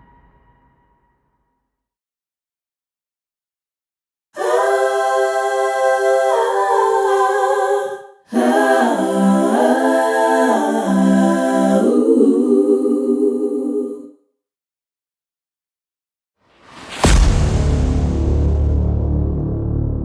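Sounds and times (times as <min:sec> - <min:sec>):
wordless voices singing chords: 0:04.4 - 0:14.2.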